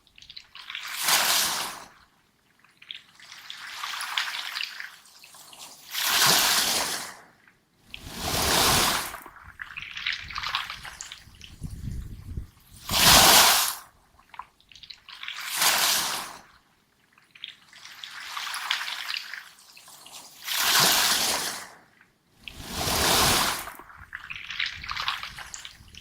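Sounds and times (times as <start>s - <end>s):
waves surging on pebble beach: 6.0s - 7.2s, 8.0s - 9.2s, 12.9s - 13.8s, 15.5s - 16.4s, 20.5s - 21.7s, 22.5s - 23.8s.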